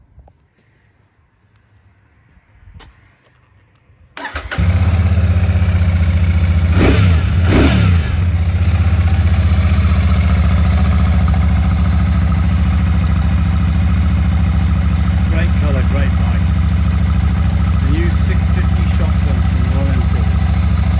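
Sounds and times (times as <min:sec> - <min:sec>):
motorcycle engine cranking: 0:04.2 - 0:07.9
engine idling: 0:04.2 - 0:20.9
engine throttle blips: 0:04.2 - 0:20.9.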